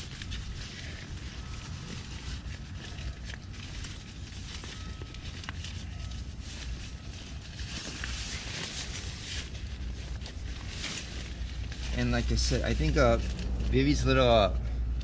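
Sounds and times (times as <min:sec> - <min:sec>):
nylon fabric rustling and scraping: 0:00.0 - 0:14.6
low steady rumble: 0:00.0 - 0:15.0.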